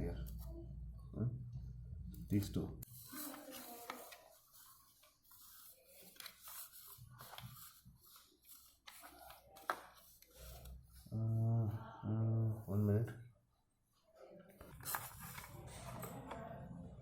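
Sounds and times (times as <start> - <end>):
man talking: 0.0 - 0.3, 2.3 - 2.8, 11.1 - 13.2.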